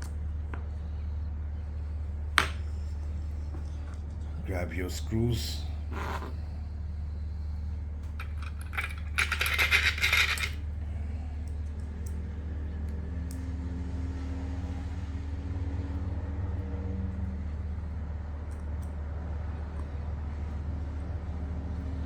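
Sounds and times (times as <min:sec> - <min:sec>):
steady low hum: 0:00.0 - 0:22.0
metal screws clinking and rattling: 0:08.1 - 0:10.7.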